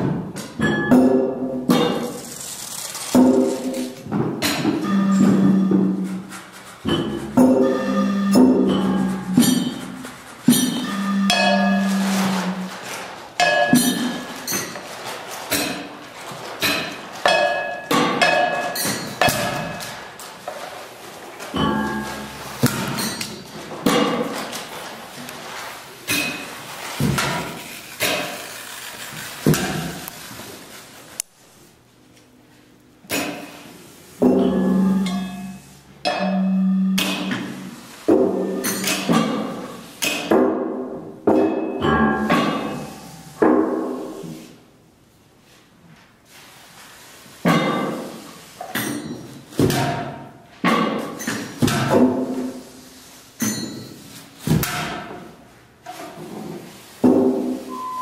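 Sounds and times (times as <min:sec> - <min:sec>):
percussion strikes and knocks: 0:00.0 - 0:02.3, 0:03.1 - 0:14.8, 0:16.6 - 0:20.0, 0:21.5 - 0:24.6, 0:34.2 - 0:44.3, 0:47.4 - 0:52.6, 0:53.4 - 0:55.2
low ringing tone: 0:04.8 - 0:06.3, 0:06.9 - 0:10.0, 0:10.6 - 0:12.8, 0:21.6 - 0:22.5, 0:34.4 - 0:37.2, 0:57.7 - 0:58.0.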